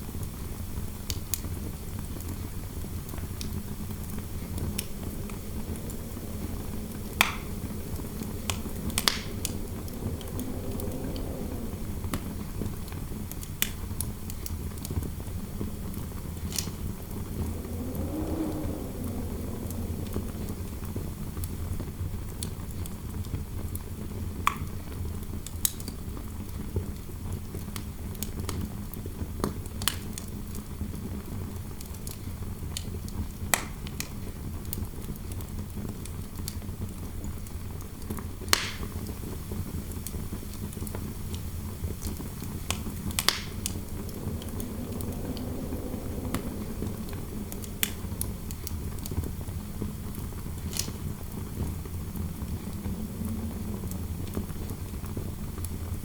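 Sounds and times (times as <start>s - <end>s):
fireplace fire crackling: 0.0s - 23.0s, 36.1s - 56.0s
interior wind rushing: 0.3s - 22.9s, 38.5s - 56.0s.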